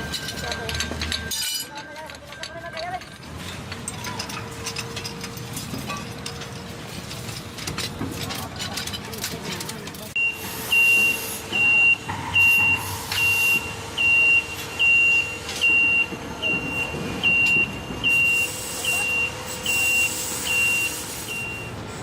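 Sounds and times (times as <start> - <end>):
machinery noise: 0.0 - 22.0
electronic warning beeps: 10.2 - 21.8.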